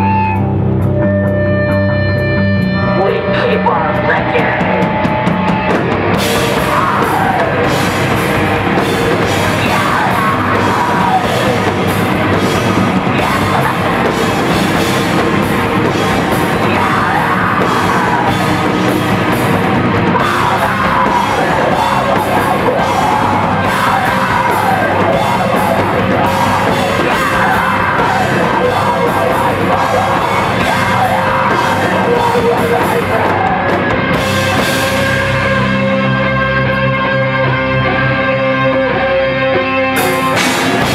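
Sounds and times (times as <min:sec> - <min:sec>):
distorted guitars: 0:00.0 - 0:40.9
pounding drums: 0:04.2 - 0:35.4, 0:40.2 - 0:40.9
person screaming vocals: 0:06.6 - 0:07.9, 0:09.6 - 0:11.8, 0:16.6 - 0:18.8, 0:20.2 - 0:33.7.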